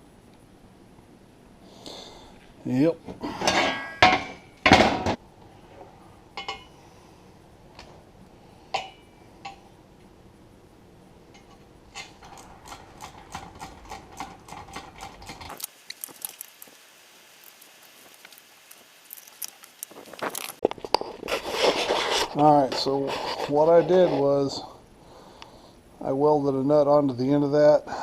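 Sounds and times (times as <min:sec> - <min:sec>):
metal parts clanking: 0:11.3 - 0:15.7.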